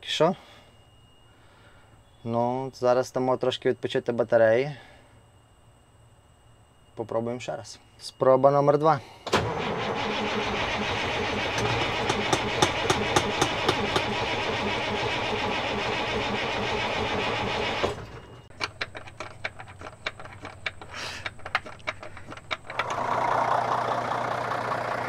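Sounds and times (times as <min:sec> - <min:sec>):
diesel engine running: 0:09.3 - 0:18.6, 0:21.3 - 0:25.0
starter cranking diesel engine: 0:09.3 - 0:19.0, 0:19.8 - 0:25.0.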